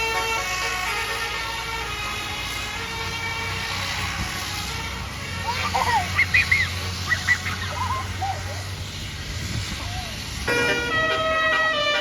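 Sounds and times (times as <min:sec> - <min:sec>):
bus engine running: 0:00.0 - 0:12.0
loud rising and falling calls: 0:05.4 - 0:08.7
multi-tone horn chord: 0:10.5 - 0:12.0.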